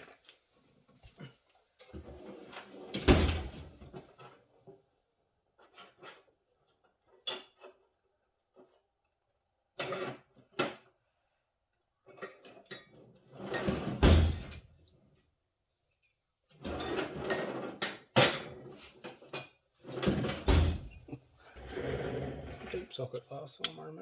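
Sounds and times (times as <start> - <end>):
metal tools clattering: 16.6 - 21.1.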